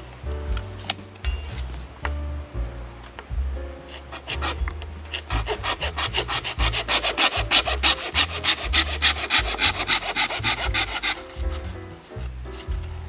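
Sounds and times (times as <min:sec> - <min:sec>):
hand saw cutting wood: 0:05.2 - 0:11.2.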